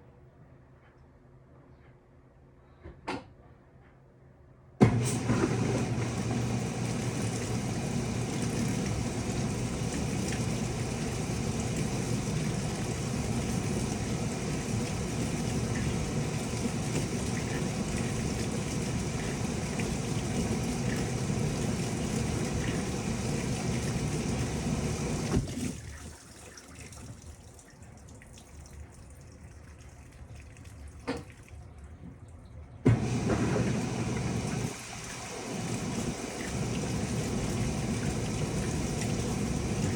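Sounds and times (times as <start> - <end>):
washing machine hum: 4.7 - 39.9
washing machine click: 4.8 - 25.5, 32.9 - 39.9
water rushing into tub: 4.8 - 28.6, 32.8 - 39.9.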